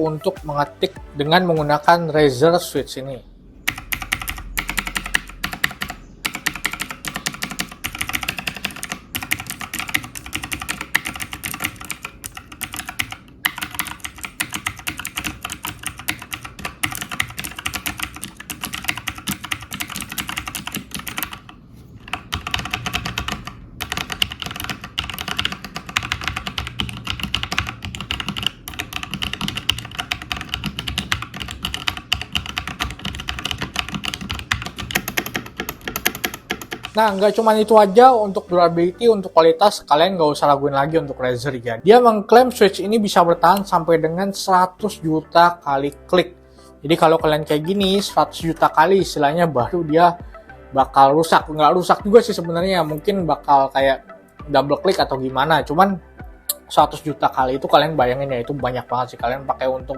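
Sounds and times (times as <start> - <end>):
typing on mechanical keyboard: 3.7 - 37.7.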